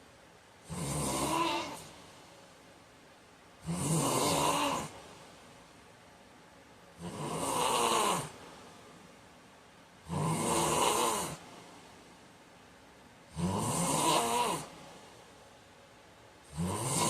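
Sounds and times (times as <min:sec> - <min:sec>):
man snoring: 0:00.6 - 0:01.9, 0:03.6 - 0:05.0, 0:07.0 - 0:08.4, 0:10.0 - 0:11.4, 0:13.3 - 0:14.7, 0:16.5 - 0:17.0.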